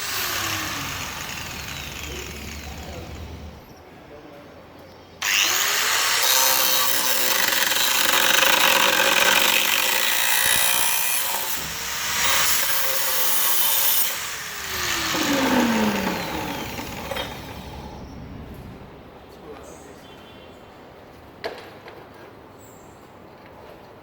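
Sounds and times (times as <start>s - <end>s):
angle grinder cutting steel: 0.0s - 3.7s, 5.2s - 18.1s
grinder disc spinning down: 0.0s - 3.7s, 11.4s - 18.2s.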